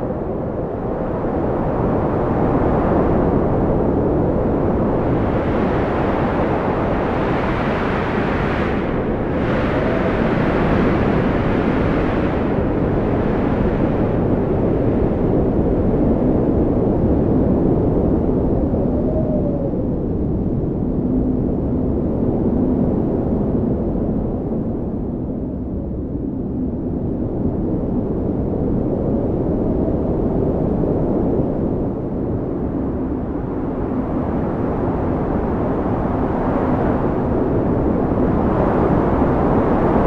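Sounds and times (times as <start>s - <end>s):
wind whistling: 0.0s - 21.0s
strong wind gusting: 0.0s - 40.0s.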